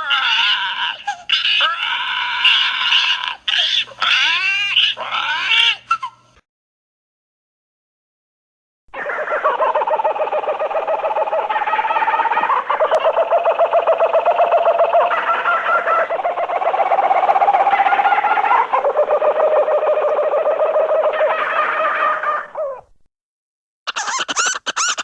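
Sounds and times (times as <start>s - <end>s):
rapid animal chattering: 9.0s - 21.3s.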